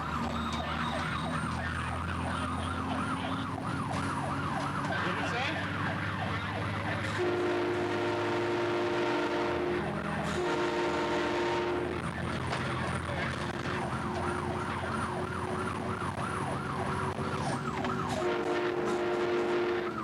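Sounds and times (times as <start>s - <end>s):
electronic siren sweeping: 0.0s - 20.0s
train horn blasts: 7.2s - 12.1s, 18.2s - 20.0s.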